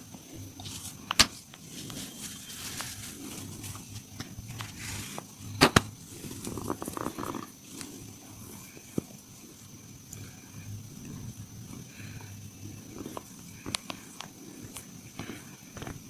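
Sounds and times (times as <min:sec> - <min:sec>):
hands rubbing skin: 0:00.6 - 0:05.2.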